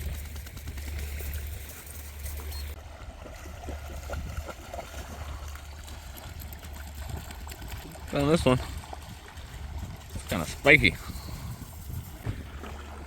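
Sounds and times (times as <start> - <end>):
small splashes: 0.0 - 10.5
small waves lapping among rocks: 0.8 - 10.7.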